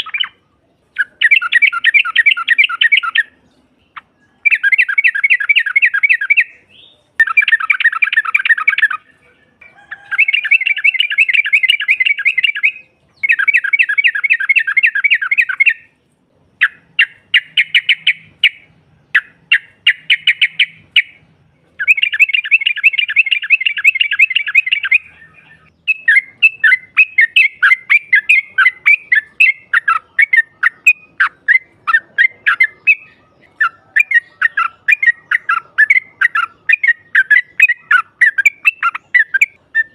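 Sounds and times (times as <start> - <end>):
bird chattering calls: 0.0 - 0.4, 1.0 - 39.9.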